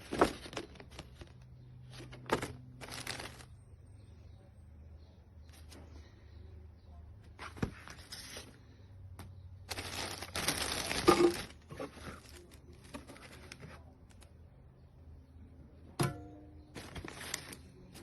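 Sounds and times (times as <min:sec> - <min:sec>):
rustling and crinkling: 0:00.0 - 0:03.7, 0:07.2 - 0:14.4, 0:16.7 - 0:18.0.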